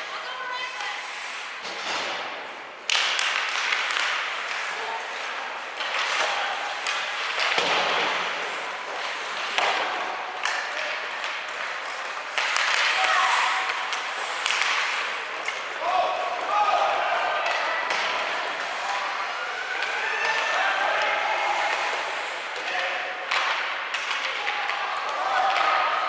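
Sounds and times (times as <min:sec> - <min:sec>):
hockey sticks clacking on puck: 0:00.6 - 0:26.0
spectators shouting and chattering: 0:15.8 - 0:23.3.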